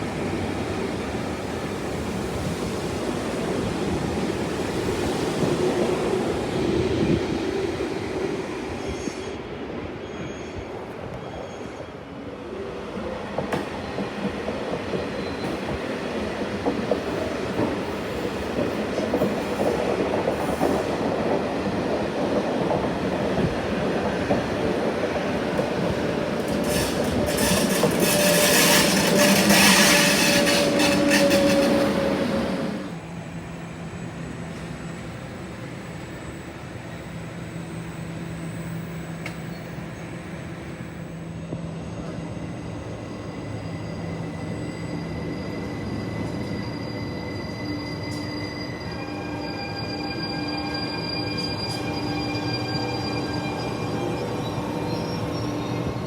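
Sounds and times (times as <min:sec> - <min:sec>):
train running on rails: 0:00.0 - 0:56.0
train wheel clatter: 0:25.5 - 0:33.0
wheels squealing: 0:26.2 - 0:32.9.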